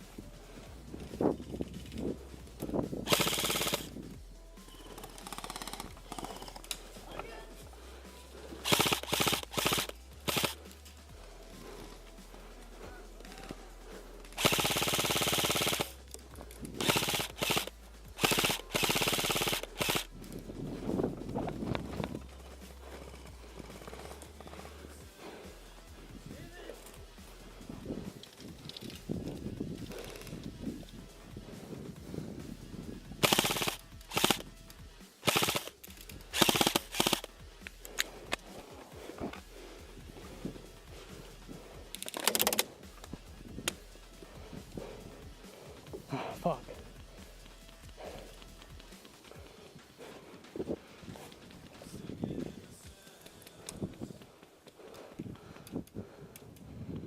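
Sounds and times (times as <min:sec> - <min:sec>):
airsoft rifle full auto bursts: 0:03.0 - 0:04.0, 0:08.6 - 0:10.6, 0:14.4 - 0:16.0, 0:16.8 - 0:20.1, 0:33.2 - 0:34.5, 0:35.2 - 0:37.3.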